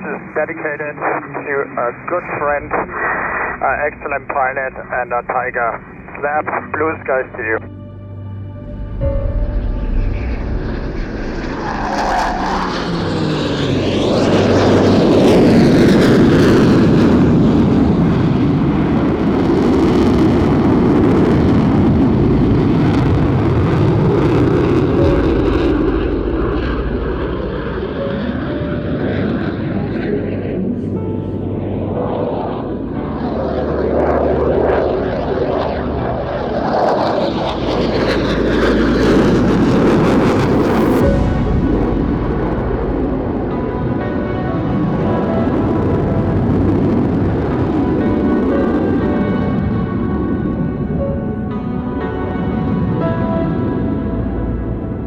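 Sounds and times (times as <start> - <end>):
loud jet noise rush: 0.0 - 7.6, 8.4 - 55.0
aircraft engines roaring: 0.0 - 55.0
falling-pitch tone: 7.6 - 16.5, 21.7 - 51.4.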